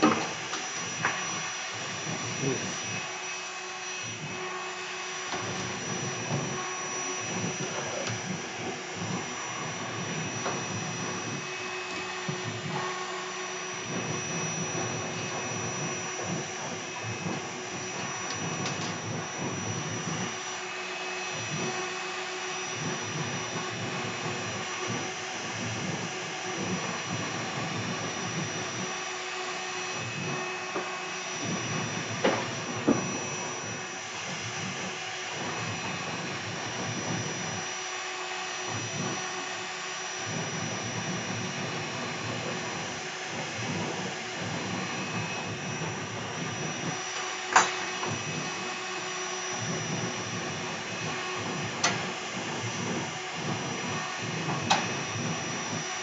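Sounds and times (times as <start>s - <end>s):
router spindle whining: 0.0s - 56.0s.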